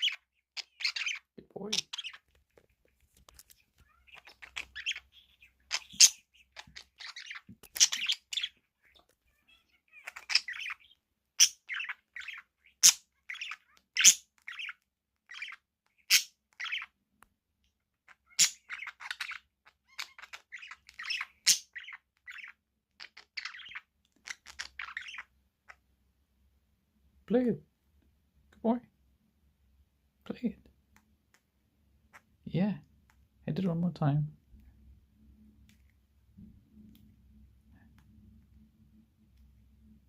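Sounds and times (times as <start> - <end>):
budgerigars chattering: 0.0 - 2.2, 3.9 - 9.0, 9.9 - 16.9, 18.1 - 25.8.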